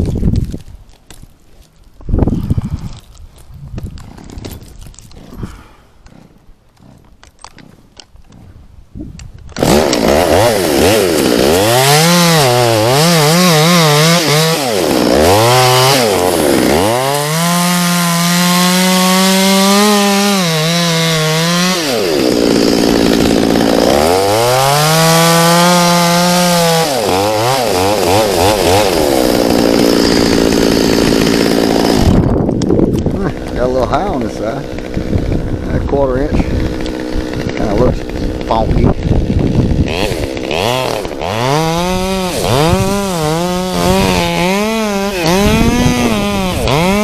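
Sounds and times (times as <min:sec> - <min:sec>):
chainsaw cutting wood: 0:00.0 - 0:08.6, 0:09.2 - 0:47.0.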